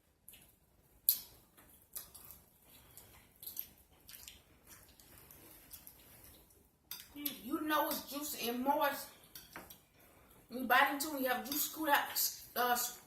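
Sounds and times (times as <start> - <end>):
wet chewing and lip smacks: 0.2 - 7.2.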